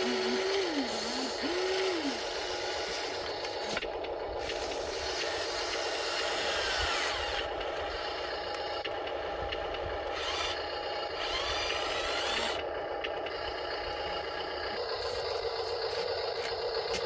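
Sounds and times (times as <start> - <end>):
small electric motors whirring: 0.0 - 17.0.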